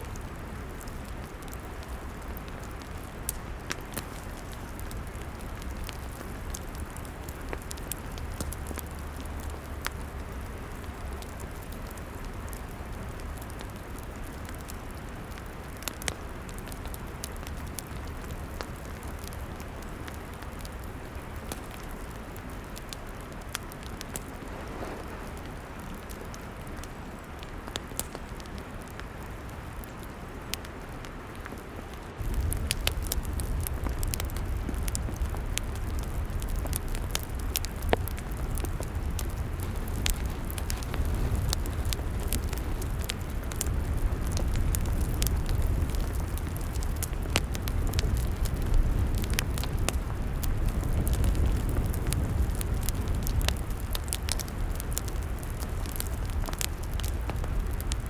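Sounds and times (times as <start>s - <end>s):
log fire hissing: 0.0s - 29.9s, 30.5s - 58.0s
fire crackles and pops: 0.0s - 58.0s.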